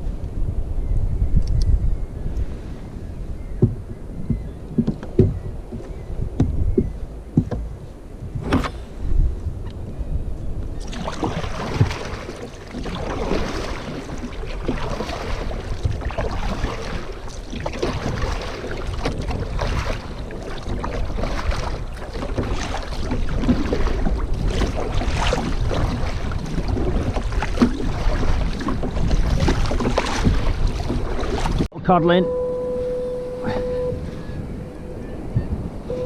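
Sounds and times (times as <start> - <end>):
wind buffeting microphone: 0.0 - 36.0
water lapping around kayak: 1.4 - 36.0
splashes and knocks: 3.6 - 8.8, 10.8 - 31.7.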